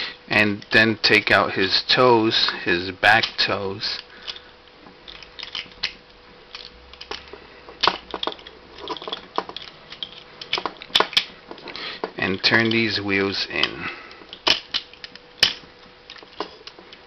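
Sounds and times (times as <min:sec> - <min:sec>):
plastic toy parts clicking and scraping: 0:03.1 - 0:04.5, 0:05.1 - 0:12.9, 0:13.5 - 0:17.0.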